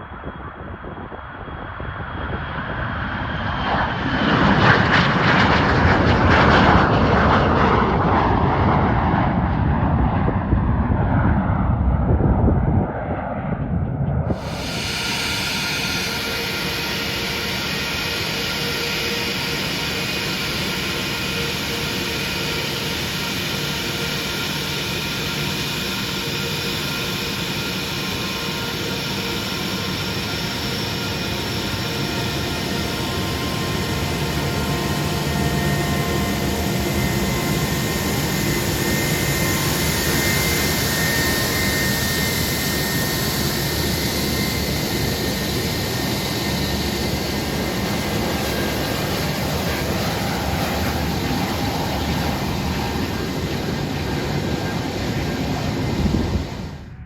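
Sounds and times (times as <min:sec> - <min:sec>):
jet engines rushing and whining: 0:00.0 - 0:57.0.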